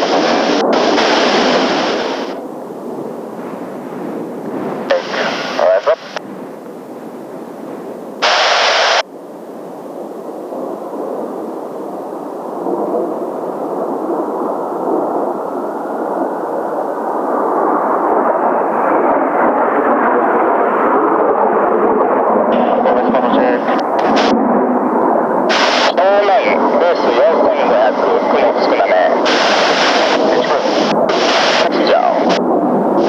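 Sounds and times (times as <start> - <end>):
radio static burst: 0.0 - 9.1, 21.9 - 33.0
jet engine noise: 0.0 - 33.0.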